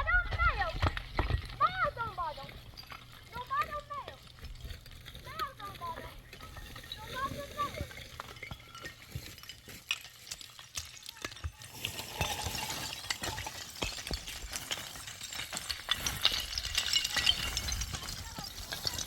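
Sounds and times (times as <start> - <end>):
stones clattering on rocky ground: 0.0 - 19.0.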